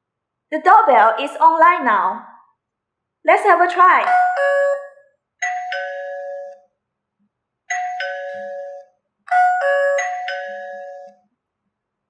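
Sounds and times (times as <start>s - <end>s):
two-note doorbell chime: 4.0s - 6.7s, 7.7s - 11.3s.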